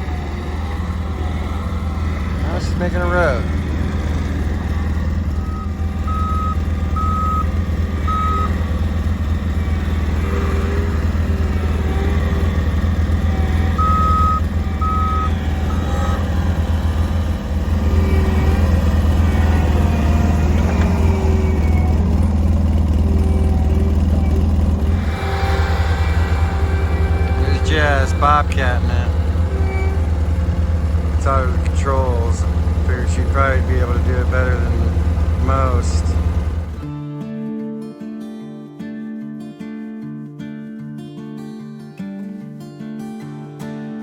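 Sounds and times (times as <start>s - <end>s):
skid steer engine running: 0.0s - 37.1s
backup alarm beeping: 3.4s - 22.6s.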